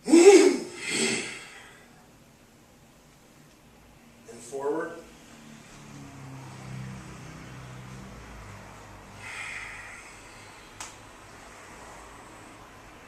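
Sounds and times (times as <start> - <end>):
person breathing out forcefully: 0.0 - 1.9, 9.2 - 10.8
sharp click: 10.8 - 11.0.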